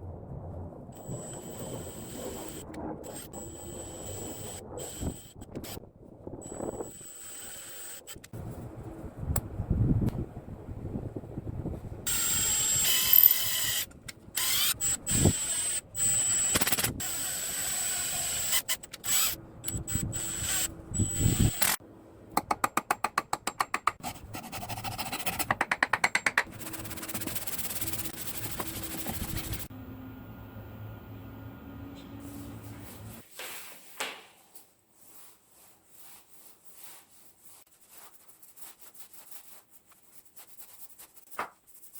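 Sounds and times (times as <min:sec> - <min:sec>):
tool scraping on wood: 0:23.8 - 0:29.7
rapid even strokes: 0:24.0 - 0:29.7.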